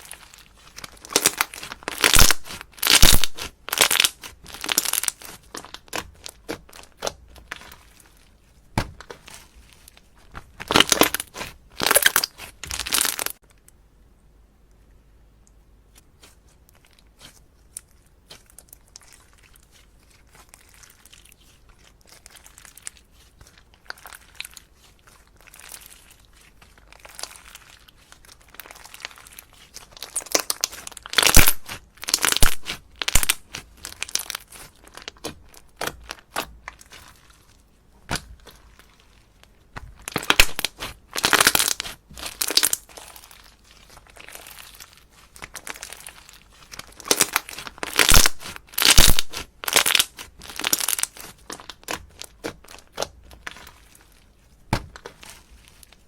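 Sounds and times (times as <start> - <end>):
slime clicking and popping: 46.8 - 53.1.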